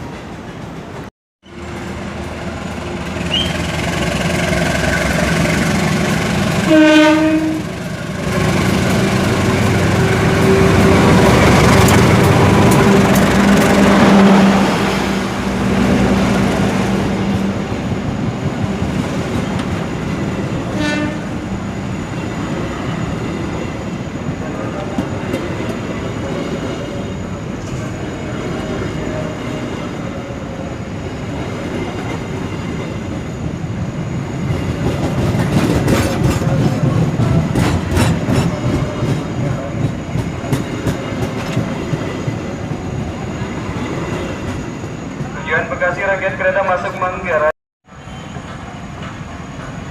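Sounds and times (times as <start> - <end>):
steady train tone: 0.0 - 49.9
train wheels clattering over rail joints: 34.5 - 42.4.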